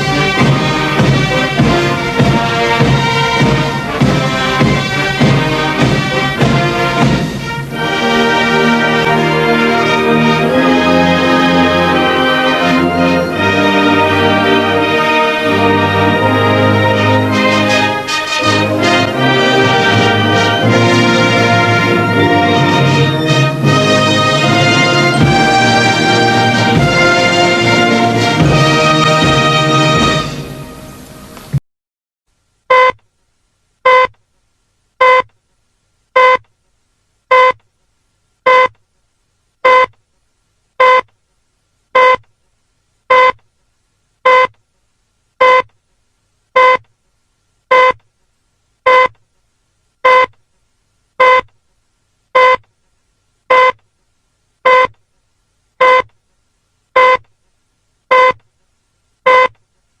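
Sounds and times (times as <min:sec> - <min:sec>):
short electronic beep: 0:32.7 - 0:33.0, 0:33.9 - 0:34.1, 0:35.0 - 0:35.3, 0:36.2 - 0:36.4, 0:37.3 - 0:37.6, 0:38.5 - 0:38.7, 0:39.7 - 0:39.9, 0:40.8 - 0:41.1, 0:42.0 - 0:42.2, 0:43.1 - 0:43.4, 0:44.3 - 0:44.5, 0:45.4 - 0:45.7, 0:46.6 - 0:46.8, 0:47.7 - 0:48.0, 0:48.9 - 0:49.1, 0:50.1 - 0:50.3, 0:51.2 - 0:51.5, 0:52.4 - 0:52.6, 0:53.5 - 0:53.8, 0:54.7 - 0:54.9, 0:55.8 - 0:56.1, 0:57.0 - 0:57.2, 0:58.1 - 0:58.4, 0:59.3 - 0:59.5.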